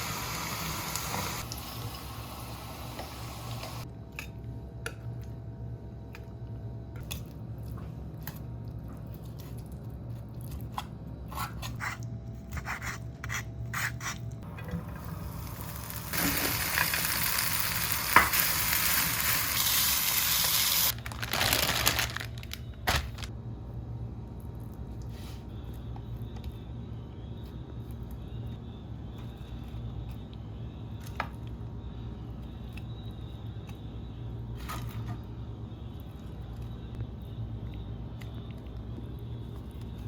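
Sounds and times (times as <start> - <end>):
food sizzling in hot oil: 0.0 - 3.8, 15.0 - 20.9.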